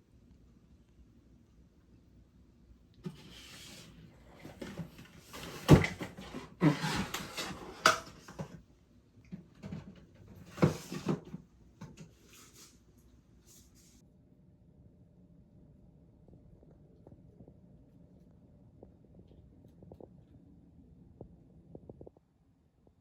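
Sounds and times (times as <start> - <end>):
rustling and clattering: 3.0 - 8.6, 9.4 - 12.7.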